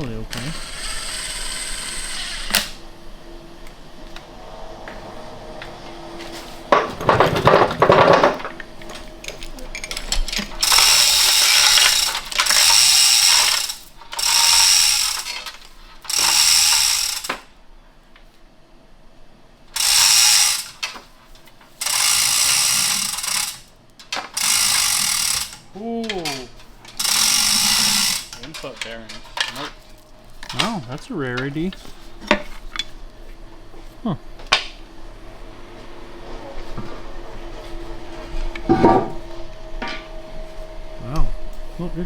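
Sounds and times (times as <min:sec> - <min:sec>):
power ratchet bursts: 0:00.3 - 0:02.8, 0:09.9 - 0:17.5, 0:19.8 - 0:21.1, 0:21.8 - 0:29.6
loud metallic clatter: 0:09.7 - 0:17.4, 0:21.8 - 0:29.7.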